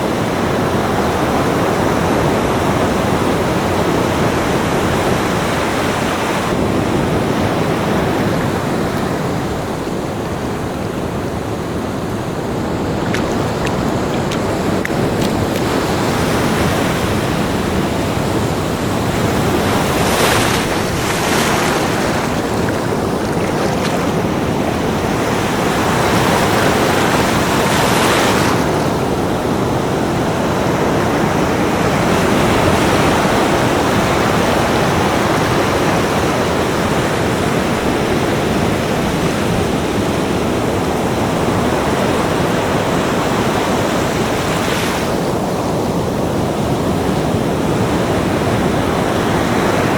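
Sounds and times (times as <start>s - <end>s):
ocean surf breaking: 0.1s - 40.6s.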